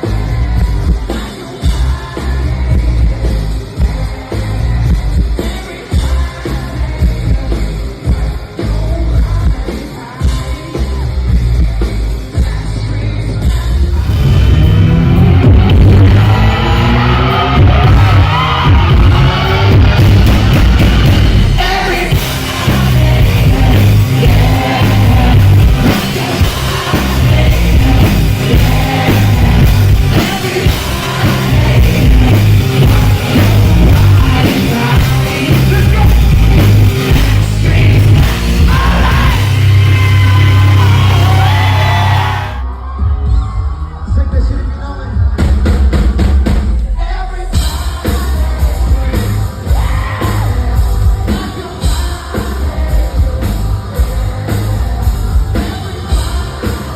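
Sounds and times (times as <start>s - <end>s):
live rock music: 0.0s - 56.9s
person singing and yelling: 21.4s - 45.5s, 46.9s - 55.0s.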